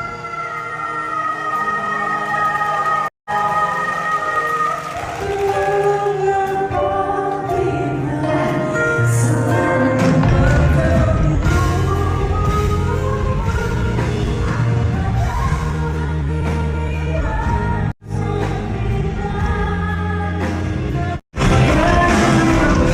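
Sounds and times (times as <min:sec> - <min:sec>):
person singing with band: 0:21.4 - 0:22.9.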